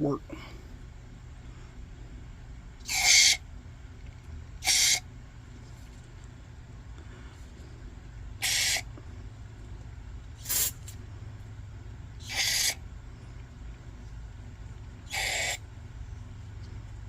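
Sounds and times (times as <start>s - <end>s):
low steady hum: 0.0s - 17.0s
short hissing sprays: 10.4s - 11.0s.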